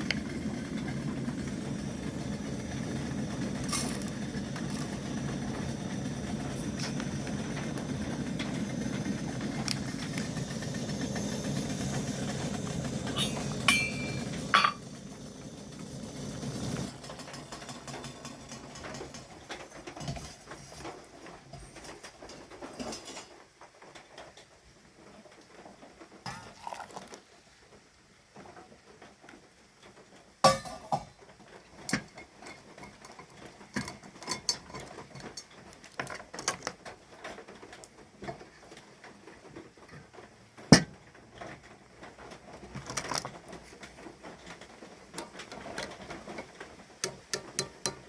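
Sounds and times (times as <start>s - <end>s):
rain pattering: 0.0s - 30.5s, 31.1s - 48.0s
cookware clinking and knocking: 13.2s - 14.8s, 30.5s - 31.1s, 47.0s - 48.0s.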